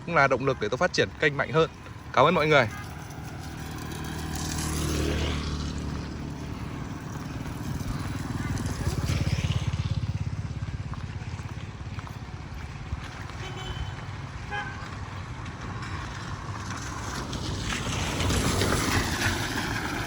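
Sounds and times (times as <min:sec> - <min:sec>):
vehicle engine pulsing: 0:00.0 - 0:20.0
rain and wet road hiss: 0:15.8 - 0:20.0.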